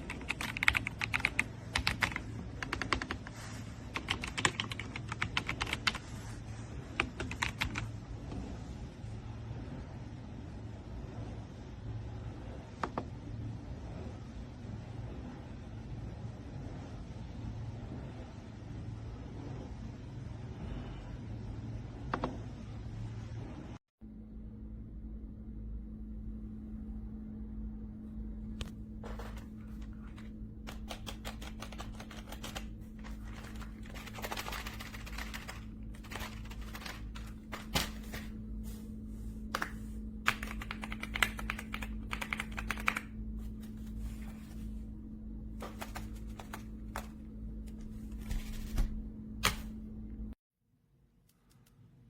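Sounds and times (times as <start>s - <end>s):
typing on mechanical keyboard: 0.0s - 3.3s, 4.0s - 6.0s, 7.0s - 7.9s, 30.7s - 37.8s, 40.3s - 43.1s, 45.6s - 47.1s
steady low hum: 0.0s - 50.4s.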